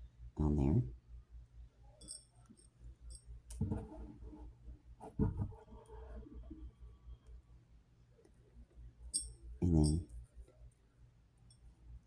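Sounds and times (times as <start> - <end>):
small metal clicks and clinks: 2.0 - 3.3, 9.1 - 10.2.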